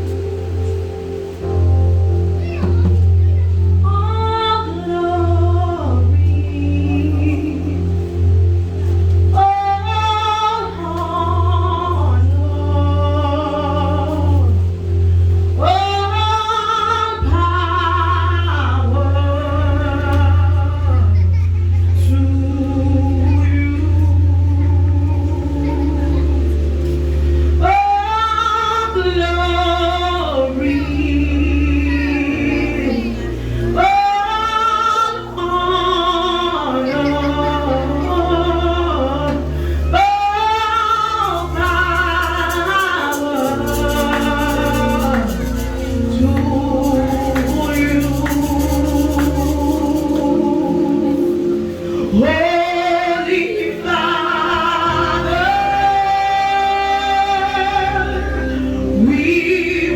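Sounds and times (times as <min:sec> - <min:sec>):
keyboard or bass accompaniment: 0:00.0 - 0:59.9
woman singing lead: 0:00.0 - 0:59.9
backing singers: 0:18.4 - 0:59.9.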